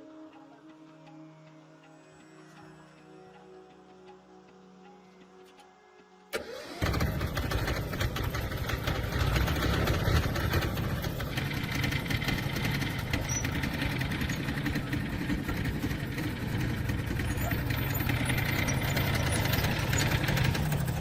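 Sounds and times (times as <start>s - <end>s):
small engine idling: 6.4s - 21.0s.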